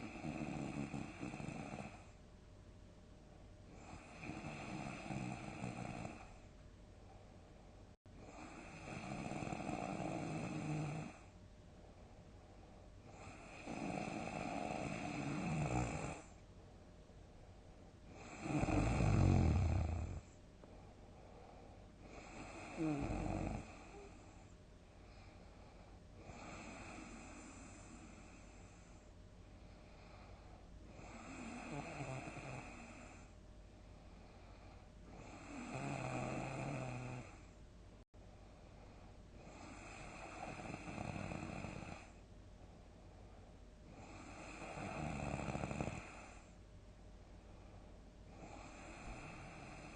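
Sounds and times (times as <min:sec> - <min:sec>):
person snoring loudly: 0:03.9 - 0:06.3, 0:08.3 - 0:11.2, 0:13.1 - 0:16.3, 0:18.2 - 0:20.3, 0:22.1 - 0:24.1, 0:31.0 - 0:32.9, 0:35.2 - 0:37.3.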